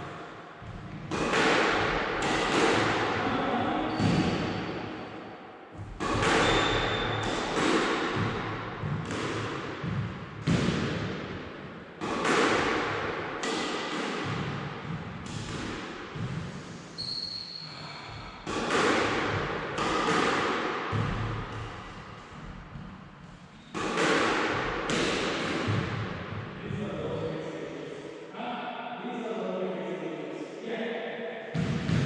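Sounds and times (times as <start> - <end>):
shoe squeaks on court: 3.8 - 4.4, 6.3 - 7.3, 17.0 - 18.0
squash ball smacks: 5.8 - 11.4, 12.0 - 16.4, 18.4 - 21.9, 23.8 - 26.1.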